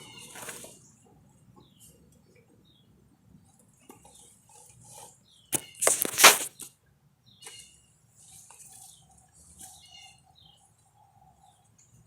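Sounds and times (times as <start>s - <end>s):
rustling scraping handling noise: 0.0s - 0.9s, 3.9s - 6.7s.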